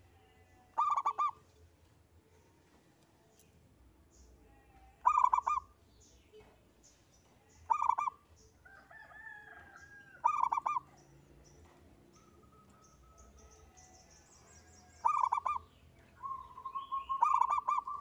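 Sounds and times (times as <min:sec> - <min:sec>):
dove cooing: 0:00.8 - 0:01.4, 0:05.0 - 0:05.7, 0:07.7 - 0:08.2, 0:10.2 - 0:10.9, 0:15.0 - 0:18.0
faint high bird chirps: 0:05.0 - 0:08.5, 0:09.7 - 0:18.0.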